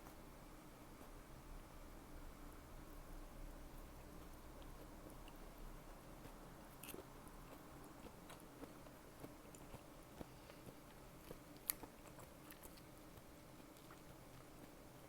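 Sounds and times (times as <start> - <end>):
chewing and biting food: 3.5 - 15.0.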